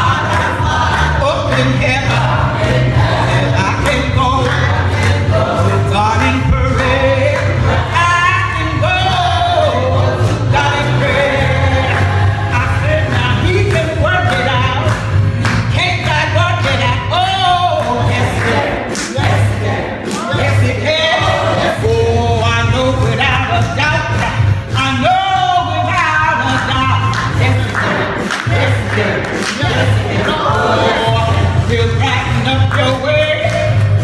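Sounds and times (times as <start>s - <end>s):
instrumental accompaniment: 0.0s - 25.8s
gospel choir singing: 0.0s - 34.0s
steady bass line: 0.0s - 34.0s.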